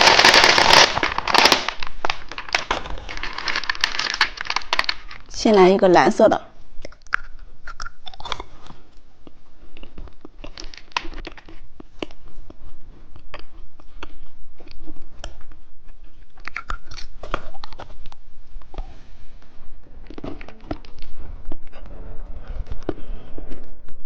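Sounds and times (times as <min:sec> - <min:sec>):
gumball crunching: 0:00.0 - 0:05.3, 0:06.8 - 0:17.8.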